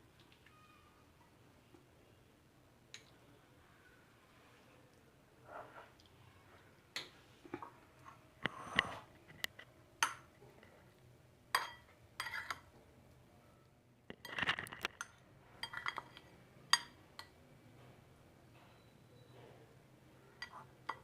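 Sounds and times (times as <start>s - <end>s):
spoon clinking against a plate: 11.5s - 12.7s, 15.0s - 17.4s.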